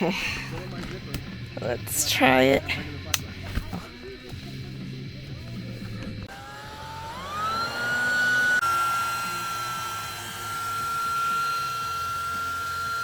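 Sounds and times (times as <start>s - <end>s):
air mattress pump whining: 6.2s - 13.0s.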